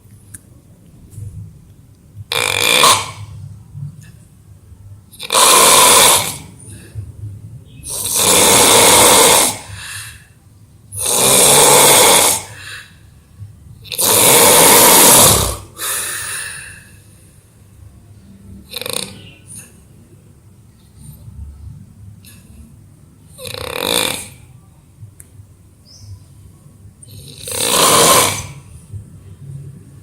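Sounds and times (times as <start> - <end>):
person snoring loudly: 2.3 - 3.3, 5.2 - 6.8, 7.9 - 10.1, 10.9 - 12.9, 13.8 - 16.9, 18.7 - 19.2, 23.4 - 24.4, 27.1 - 28.7.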